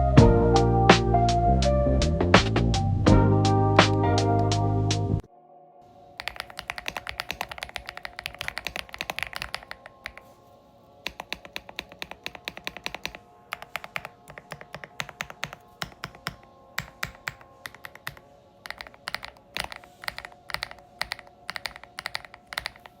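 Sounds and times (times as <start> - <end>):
background music: 0.0 - 23.0
mechanical keyboard typing: 6.2 - 10.3, 11.0 - 23.0.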